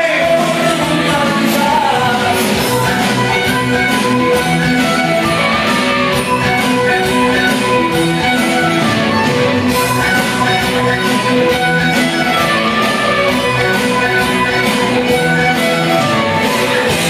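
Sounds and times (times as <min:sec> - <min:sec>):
loud dance music with guitar: 0:00.0 - 0:17.0.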